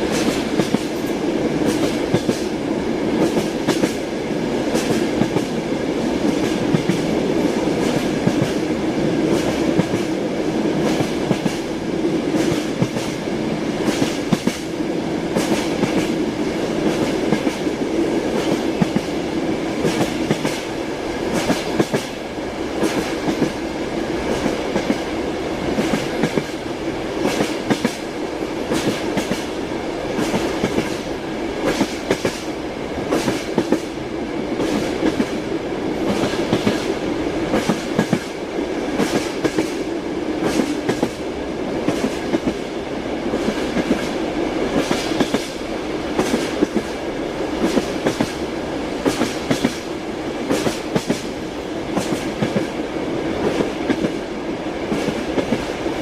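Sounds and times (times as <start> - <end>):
train wheels clacking over rail joints: 0.0 - 2.5, 3.2 - 4.0, 4.7 - 5.6, 10.8 - 11.7, 13.8 - 14.7, 15.3 - 16.2, 19.8 - 22.2, 22.8 - 23.6, 25.7 - 26.6, 27.2 - 34.0, 36.0 - 38.4, 39.0 - 42.7, 43.3 - 47.0, 47.6 - 48.4, 49.0 - 52.7.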